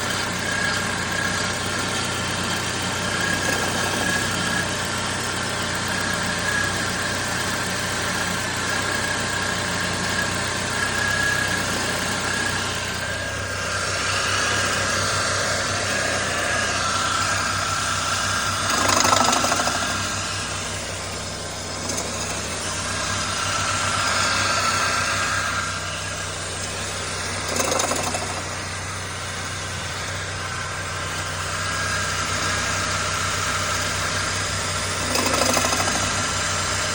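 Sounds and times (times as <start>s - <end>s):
car engine idling: 0.0s - 36.9s
high-pitched whine: 8.6s - 35.0s.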